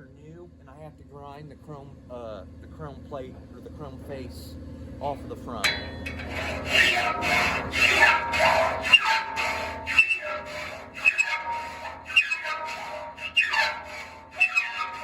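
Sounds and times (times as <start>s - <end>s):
hand file rasping on saw blade: 5.7s - 15.0s
steel blade ringing squeal: 5.7s - 15.0s.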